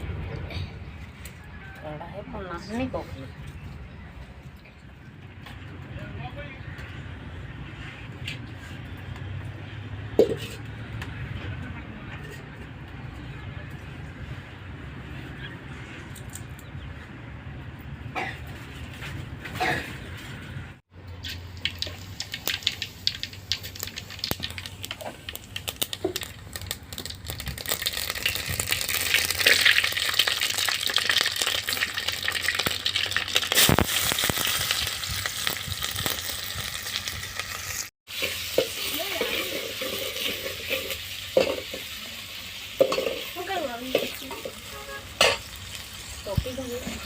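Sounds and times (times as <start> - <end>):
oil sizzling in a pan: 21.2 - 47.0
spoon stirring in a pan: 42.8 - 45.4.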